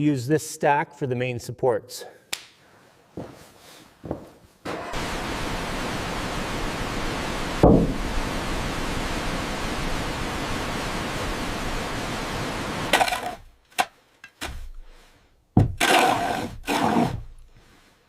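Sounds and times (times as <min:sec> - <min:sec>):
rushing water: 0:05.0 - 0:13.3
dull thump: 0:07.6 - 0:08.1, 0:15.6 - 0:15.8.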